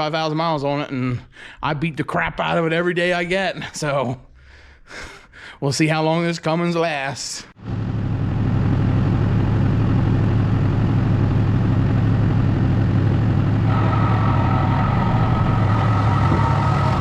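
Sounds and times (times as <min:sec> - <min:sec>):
higher steady whine: 0:07.6 - 0:17.0
diesel engine idling: 0:08.0 - 0:17.0.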